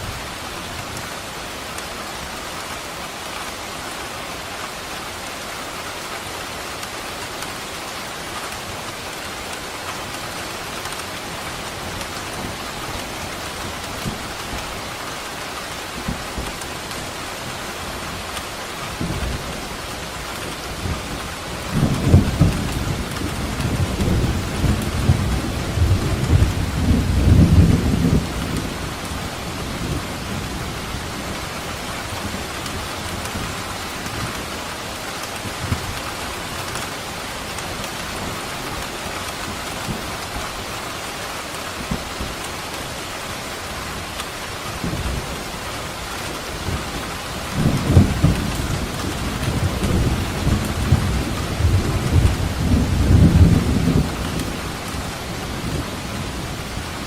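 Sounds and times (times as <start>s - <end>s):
steady rain falling: 0.0s - 57.0s
thunder rumbling: 20.8s - 31.4s, 46.6s - 57.0s.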